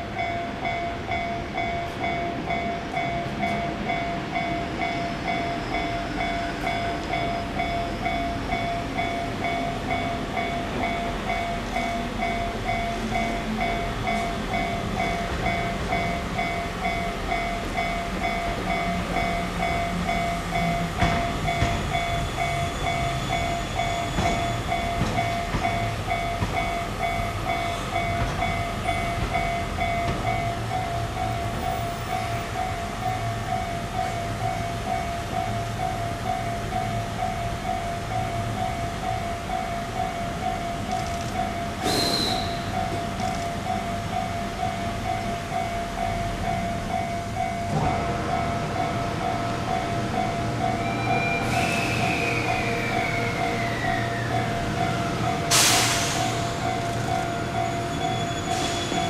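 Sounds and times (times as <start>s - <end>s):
level crossing warning bell ringing: 0.0s - 59.0s
train running past: 0.0s - 59.0s.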